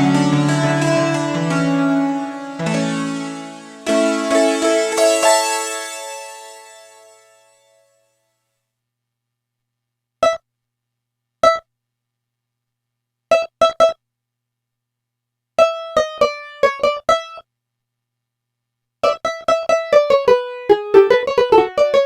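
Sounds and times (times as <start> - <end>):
synthesizer short notes: 0.0 - 7.5.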